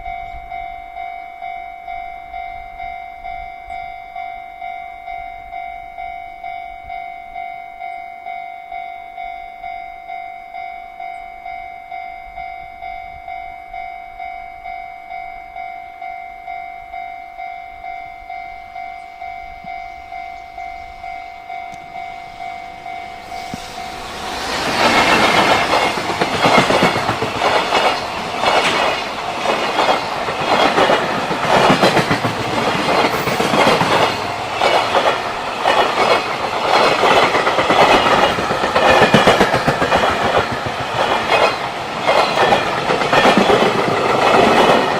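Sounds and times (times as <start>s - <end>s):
freight train passing: 0.0s - 44.9s
level-crossing warning bell ringing: 0.0s - 44.9s
train wheels clattering over rail joints: 23.3s - 44.9s.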